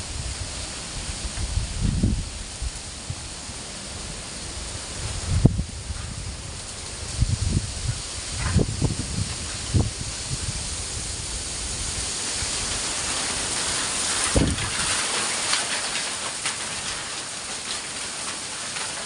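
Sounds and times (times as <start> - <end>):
strong wind rushing: 0.0 - 13.5
wind buffeting microphone: 0.0 - 15.2.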